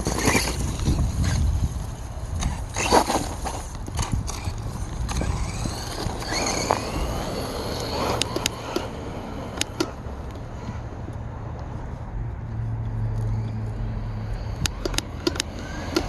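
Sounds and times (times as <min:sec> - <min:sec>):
electric motor whine: 0:02.6 - 0:10.0.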